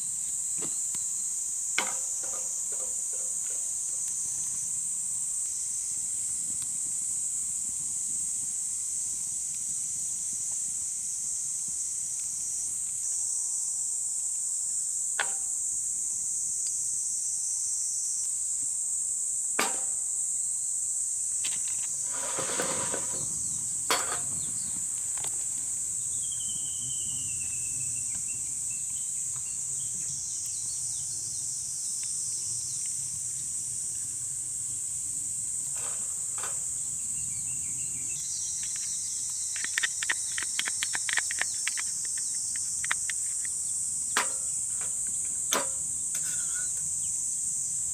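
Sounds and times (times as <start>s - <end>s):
insects chorus: 0.0s - 47.9s
brief rustle: 21.4s - 23.3s, 38.6s - 43.6s
sharp clicks: 38.6s - 43.6s.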